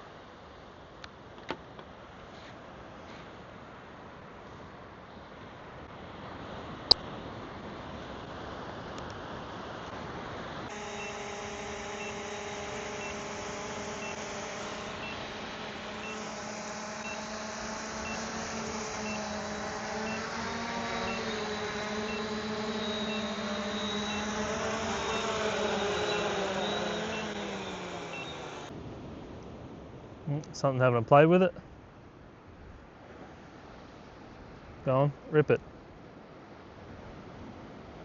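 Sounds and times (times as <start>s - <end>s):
reversing beeper: 10.7s - 28.7s
vehicle engine running: 10.7s - 28.7s.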